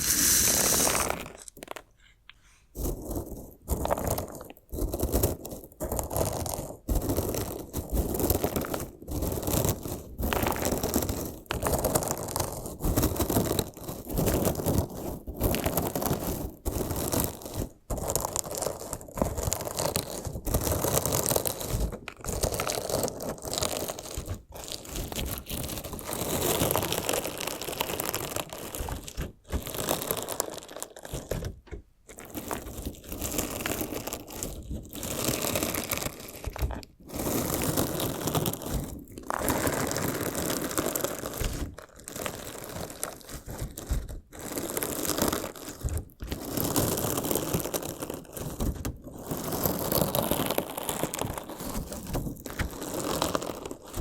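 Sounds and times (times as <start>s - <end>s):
crunchy slime crackling: 2.8s - 54.0s.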